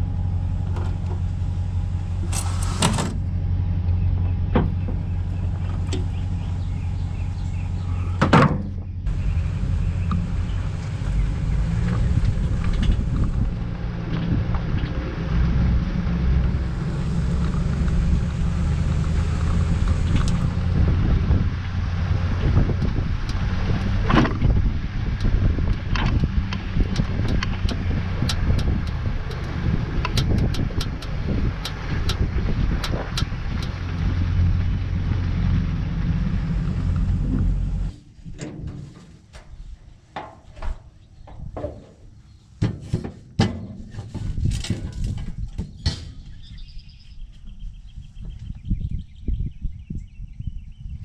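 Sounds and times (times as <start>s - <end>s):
vehicle engine running: 0.0s - 38.0s
knocks and clicks: 25.2s - 34.1s.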